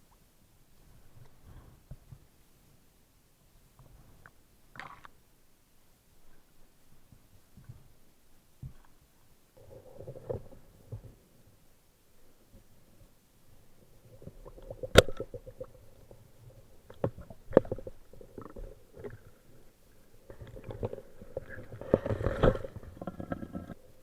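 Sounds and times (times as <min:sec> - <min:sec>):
underwater rumble: 0:13.6 - 0:24.0
water bubbling: 0:14.0 - 0:23.8.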